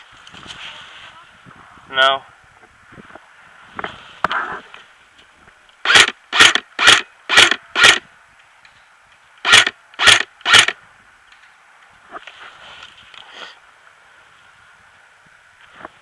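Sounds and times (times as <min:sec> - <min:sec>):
airsoft gun firing single shots: 0:05.8 - 0:08.0, 0:09.4 - 0:10.8.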